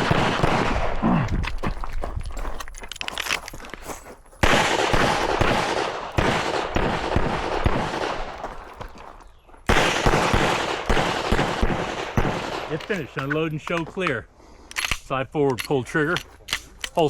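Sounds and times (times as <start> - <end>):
pistol shots with echo: 0.0 - 1.2, 4.4 - 8.8, 9.7 - 13.2.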